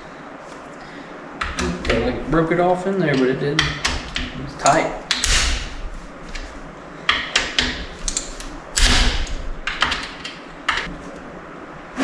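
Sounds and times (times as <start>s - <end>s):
metallic clicks and clunks of tools: 7.1s - 10.0s.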